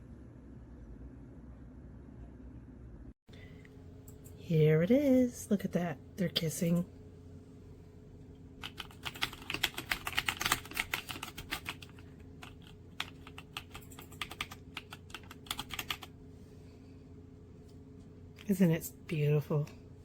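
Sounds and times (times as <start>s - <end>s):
mechanical keyboard typing: 8.6s - 16.1s.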